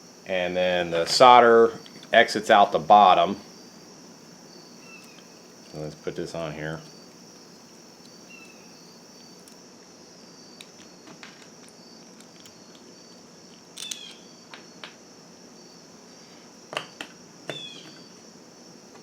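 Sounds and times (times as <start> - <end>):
small parts clicking and knocking: 10.6 - 12.9, 13.5 - 15.0.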